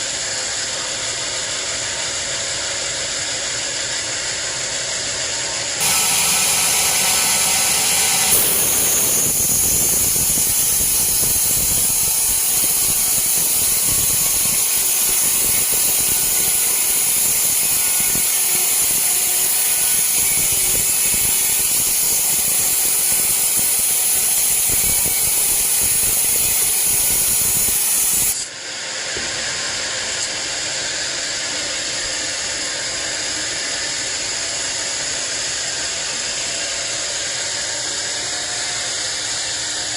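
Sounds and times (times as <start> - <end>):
saw running without load: 0.0 - 39.9
band saw cutting log: 5.8 - 28.5.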